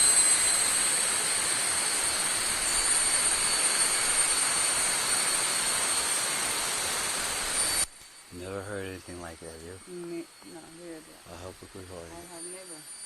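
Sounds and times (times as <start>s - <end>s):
insect chorus buzzing drone: 0.0s - 13.0s.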